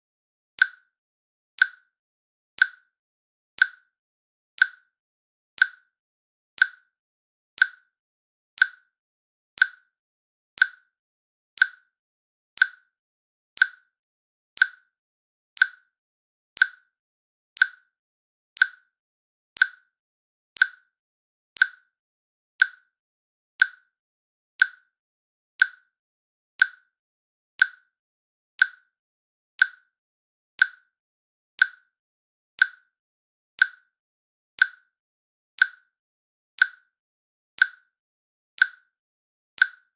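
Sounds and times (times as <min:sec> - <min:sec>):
timer clicks: 0:00.6 - 0:01.0, 0:01.6 - 0:01.9, 0:02.6 - 0:02.9, 0:03.6 - 0:03.9, 0:04.6 - 0:05.0, 0:05.6 - 0:05.9, 0:06.6 - 0:07.0, 0:07.6 - 0:08.0, 0:08.6 - 0:09.0, 0:09.6 - 0:10.0, 0:10.6 - 0:11.0, 0:11.6 - 0:12.0, 0:12.6 - 0:13.0, 0:13.6 - 0:14.0, 0:14.6 - 0:15.0, 0:15.6 - 0:16.0, 0:16.6 - 0:17.0, 0:17.6 - 0:18.0, 0:18.6 - 0:19.0, 0:19.6 - 0:20.0, 0:20.6 - 0:21.0, 0:21.6 - 0:22.0, 0:22.6 - 0:23.0, 0:23.6 - 0:24.0, 0:24.6 - 0:25.0, 0:25.6 - 0:26.0, 0:26.6 - 0:27.0, 0:27.6 - 0:28.0, 0:28.6 - 0:29.0, 0:29.6 - 0:30.0, 0:30.6 - 0:31.0, 0:31.6 - 0:32.0, 0:32.6 - 0:33.0, 0:33.6 - 0:34.0, 0:34.6 - 0:35.0, 0:35.6 - 0:36.0, 0:36.6 - 0:37.0, 0:37.6 - 0:38.0, 0:38.6 - 0:39.0, 0:39.6 - 0:39.9.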